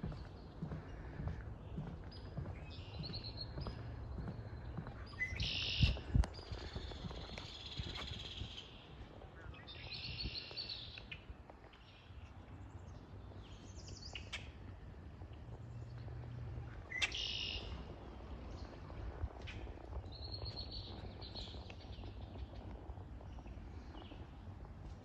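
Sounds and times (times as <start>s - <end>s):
songbirds singing: 0.0s - 25.0s
low steady rumble: 12.6s - 25.0s.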